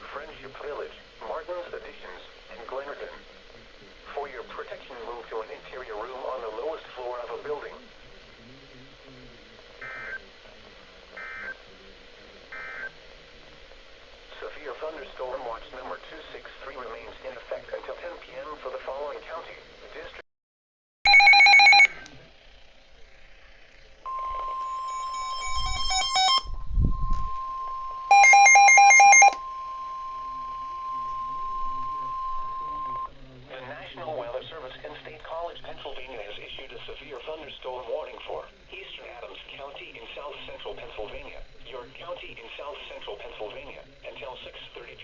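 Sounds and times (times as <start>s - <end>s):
rapid electronic beeping: 24.1s - 33.1s
warbling digital data tones: 24.1s - 33.1s.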